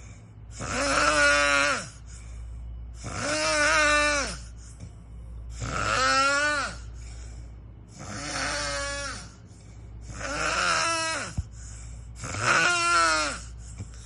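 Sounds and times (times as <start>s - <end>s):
pig snoring: 0.5s - 2.1s, 2.9s - 4.6s, 5.4s - 7.3s, 7.9s - 11.4s, 12.2s - 14.0s.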